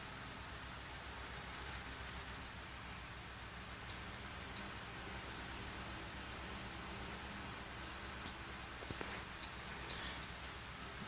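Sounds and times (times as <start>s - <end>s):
low computer hum: 0.0s - 11.0s
computer mouse clicks: 1.5s - 2.4s.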